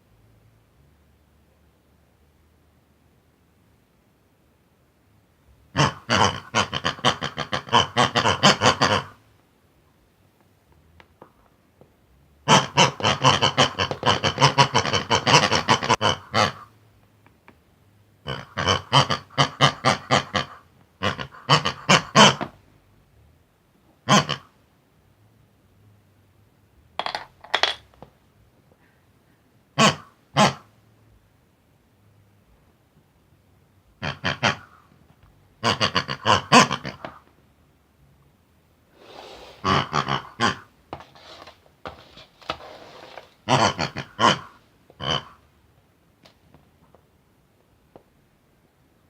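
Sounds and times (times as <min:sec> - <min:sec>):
cartoon pig voices oinking gibberish: 0:05.7 - 0:09.2, 0:12.4 - 0:16.7, 0:18.2 - 0:22.5, 0:24.0 - 0:24.6, 0:29.8 - 0:30.7, 0:34.0 - 0:34.9, 0:35.6 - 0:37.2, 0:39.5 - 0:40.7, 0:43.4 - 0:45.4.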